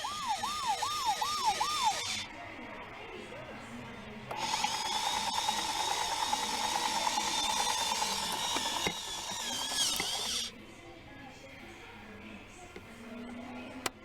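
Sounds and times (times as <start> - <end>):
toy gear mechanism whirring and clicking: 0.0 - 2.3, 4.3 - 10.6.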